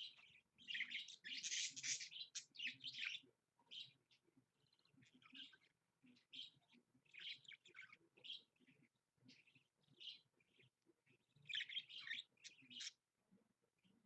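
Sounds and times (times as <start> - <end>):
budgerigar chirping: 0.0 - 4.0, 11.4 - 13.0.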